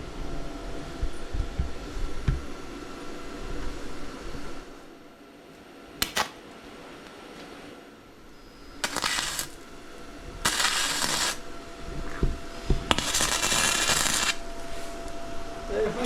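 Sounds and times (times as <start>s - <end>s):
welding arc crackling: 6.0s - 6.4s, 8.7s - 11.8s, 12.9s - 15.2s.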